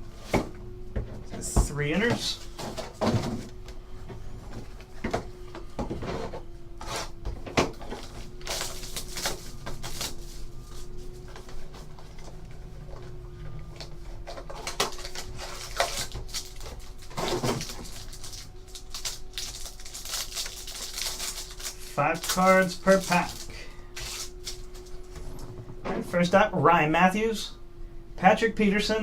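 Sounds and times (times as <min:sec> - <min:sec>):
faint steady hum: 0:00.0 - 0:29.0
packaging crinkling and rustling: 0:07.7 - 0:25.5.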